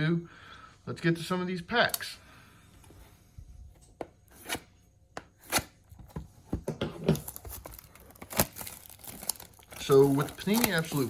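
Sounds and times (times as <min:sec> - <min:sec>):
cardboard scraping and tearing: 0:07.1 - 0:11.0.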